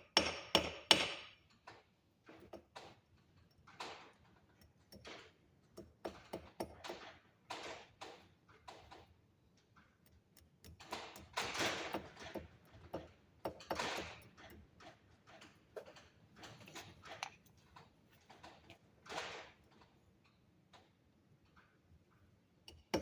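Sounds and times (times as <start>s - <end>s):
small tool clicks: 9.6s - 12.4s.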